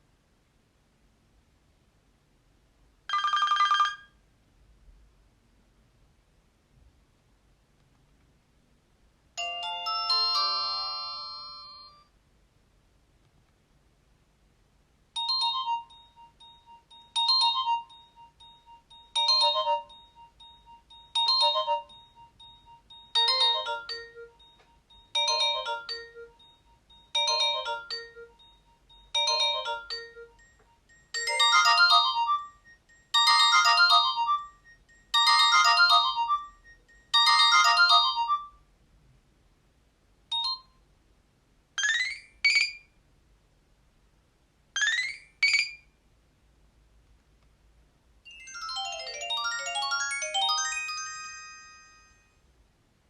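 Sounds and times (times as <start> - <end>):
phone ringtone melody: 3.1 - 4.2, 9.4 - 12.1, 15.2 - 38.6, 40.3 - 40.7, 41.8 - 42.8, 48.3 - 52.4.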